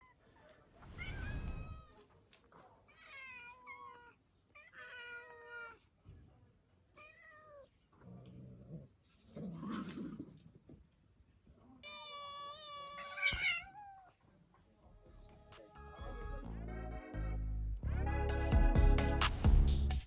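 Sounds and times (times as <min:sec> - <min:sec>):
cat meowing: 0:11.8 - 0:14.2.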